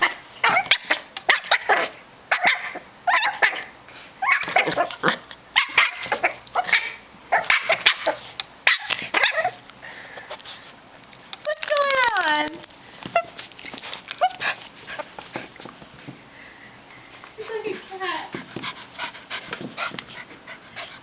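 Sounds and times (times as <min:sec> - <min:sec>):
puppy yipping and barking: 0:02.3 - 0:05.0.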